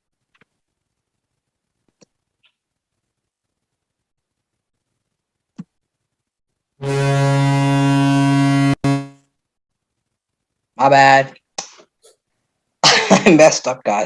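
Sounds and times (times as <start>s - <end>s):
deep goal horn blast: 6.8s - 9.2s.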